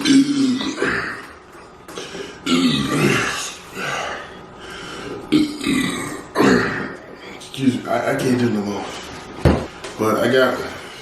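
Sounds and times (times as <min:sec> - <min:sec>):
man burping: 0:00.0 - 0:01.3, 0:02.4 - 0:03.5, 0:05.3 - 0:07.1.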